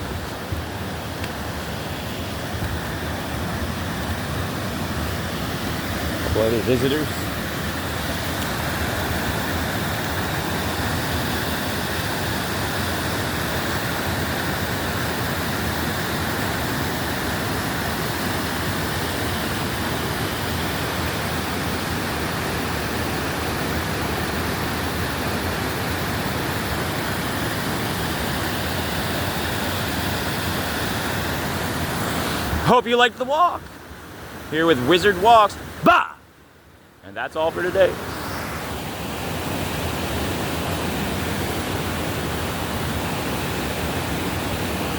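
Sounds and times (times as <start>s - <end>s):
waterfall rushing: 0.0s - 33.6s, 34.3s - 36.2s.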